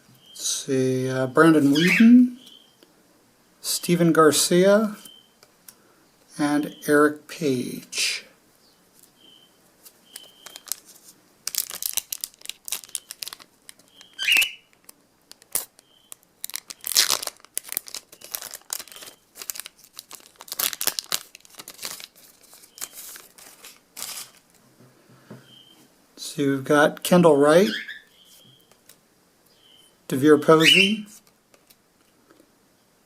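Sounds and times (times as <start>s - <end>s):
cards being handled: 9.8s - 15.8s, 16.4s - 24.6s
wrapper tearing and crinkling: 10.1s - 24.6s.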